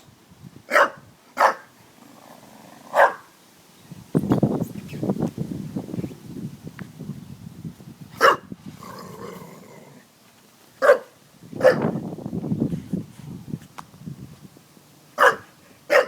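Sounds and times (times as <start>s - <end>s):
dog barking: 0.7s - 1.7s, 2.9s - 3.3s, 8.2s - 8.5s, 10.8s - 11.8s, 15.2s - 16.0s
dog growling: 8.8s - 10.0s.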